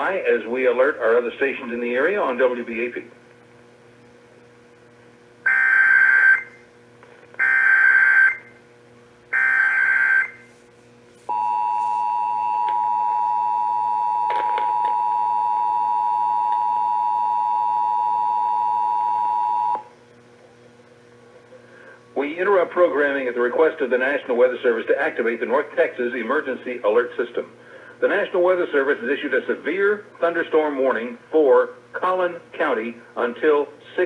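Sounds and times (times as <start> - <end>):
two-tone attention signal: 11.3 - 19.8.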